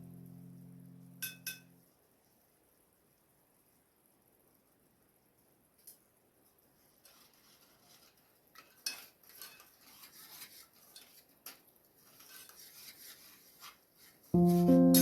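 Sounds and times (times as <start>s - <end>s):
utensil scraping and clinking cookware: 8.6s - 11.2s.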